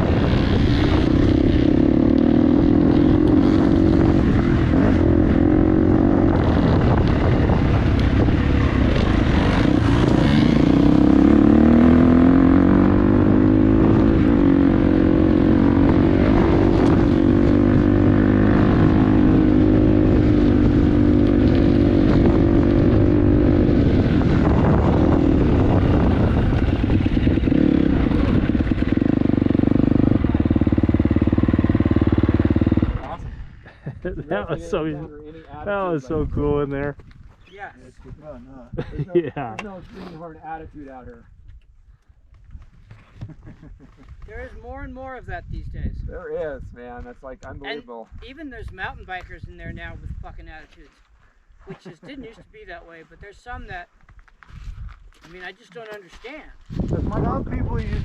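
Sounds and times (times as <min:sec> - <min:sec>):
dirt bike engine revving: 0:00.0 - 0:33.7.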